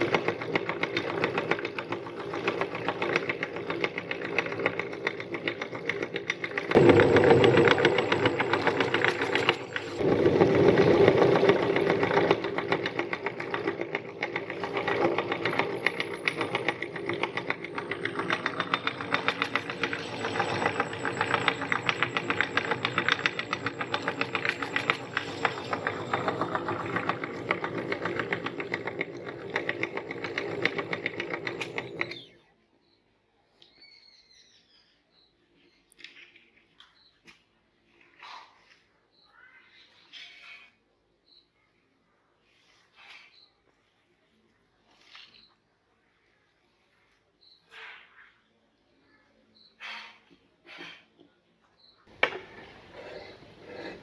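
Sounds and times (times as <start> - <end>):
meat grinder rattling: 0.0 - 32.2.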